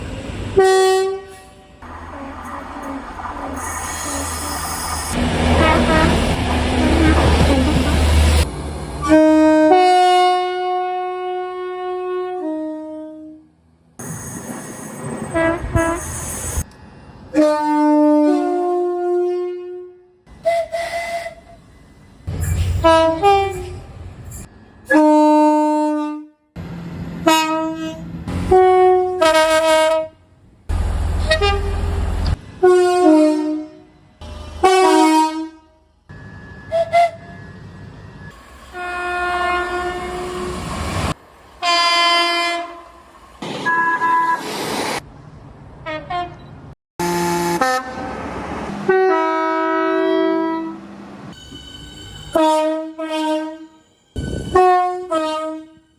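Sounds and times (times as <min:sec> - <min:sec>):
passing train rumble: 0:00.0 - 0:19.1, 0:20.2 - 0:25.7, 0:26.6 - 0:46.8, 0:47.4 - 0:55.9
train horn chords: 0:05.1 - 0:08.0, 0:09.0 - 0:13.5, 0:27.2 - 0:35.9, 0:38.7 - 0:43.0, 0:47.0 - 0:48.2, 0:48.8 - 0:50.9, 0:52.3 - 0:53.8, 0:54.5 - 0:55.9.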